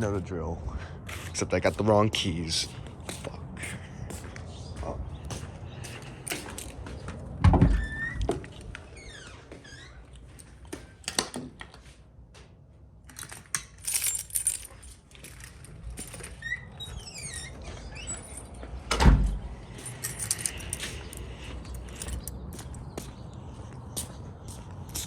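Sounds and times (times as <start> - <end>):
keys jangling: 6.3 - 6.8, 13.1 - 16.5, 19.6 - 23.0.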